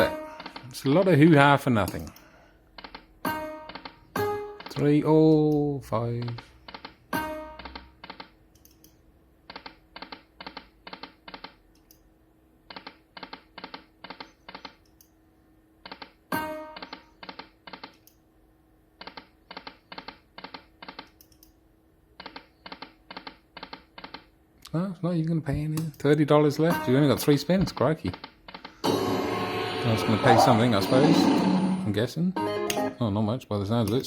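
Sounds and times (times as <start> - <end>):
steady low hum: 28.8 - 32.3.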